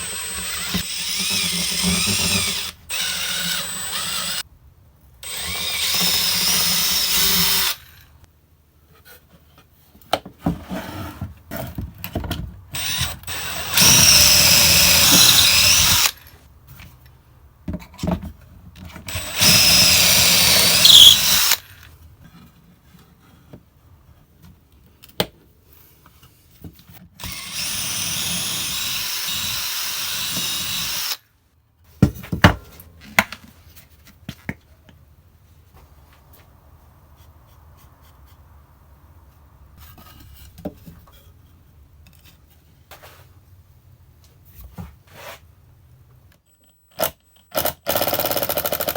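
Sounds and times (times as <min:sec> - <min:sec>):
power drill into wood: 0:05.3 - 0:07.8, 0:12.8 - 0:16.2, 0:19.1 - 0:21.7, 0:27.2 - 0:31.2.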